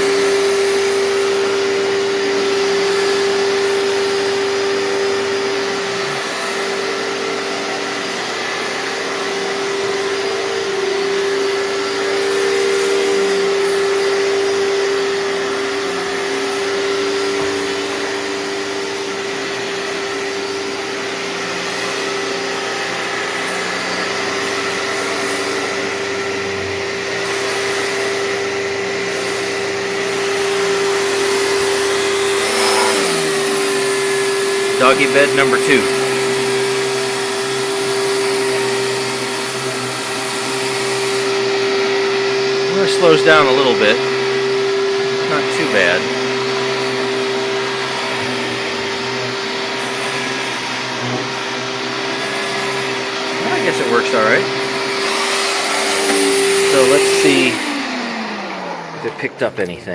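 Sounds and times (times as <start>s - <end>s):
vacuum cleaner motor whine: 0.0s - 59.9s.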